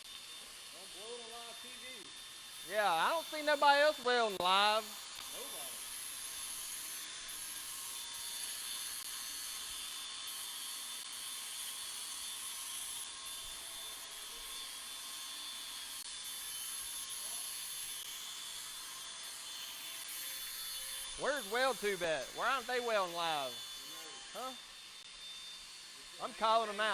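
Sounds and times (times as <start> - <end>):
welding arc hissing: 0.0 - 15.0.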